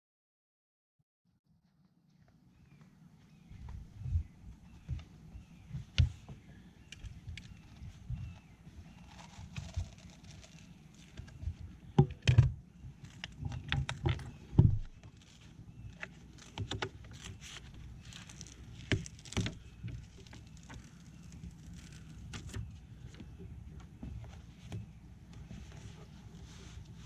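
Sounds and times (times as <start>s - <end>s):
knocks clicks and rustling on deck: 5.7s - 8.5s, 11.0s - 26.0s.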